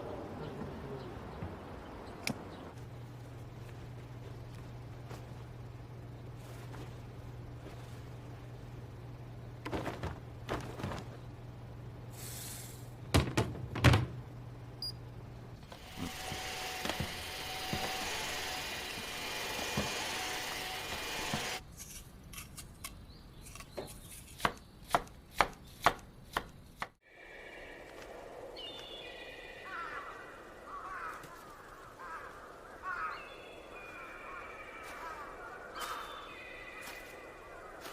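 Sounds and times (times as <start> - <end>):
low steady hum: 0.0 - 23.5
even hiss: 12.0 - 13.0.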